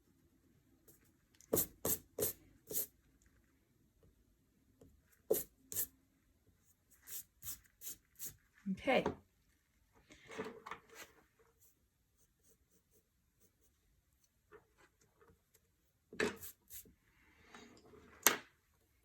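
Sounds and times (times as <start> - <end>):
scratching and rubbing on paper: 0.9 - 2.9, 5.3 - 5.9, 6.7 - 8.6, 11.0 - 14.4, 16.4 - 16.9.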